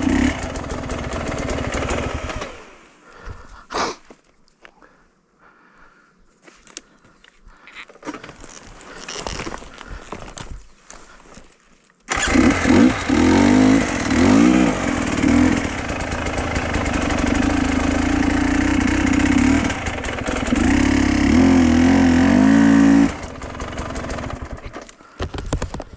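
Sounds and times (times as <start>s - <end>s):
small engine revving: 0.0s - 2.8s, 12.1s - 24.9s.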